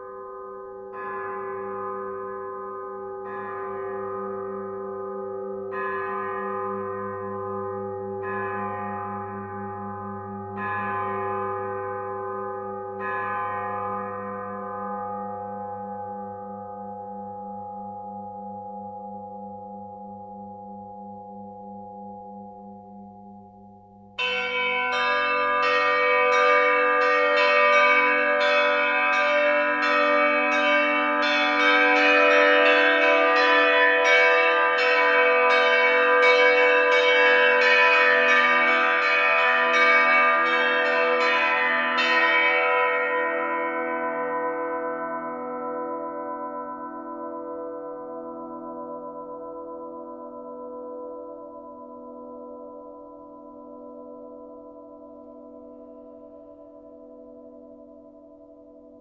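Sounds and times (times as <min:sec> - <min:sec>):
church bells pealing: 0:00.0 - 0:17.2, 0:24.2 - 0:50.4
low ringing tone: 0:11.5 - 0:24.2.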